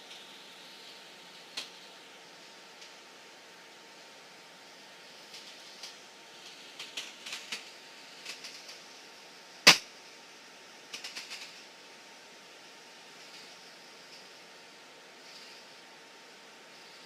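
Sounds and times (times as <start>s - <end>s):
steady hiss: 0.0s - 17.0s
loud sharp click: 9.6s - 9.9s.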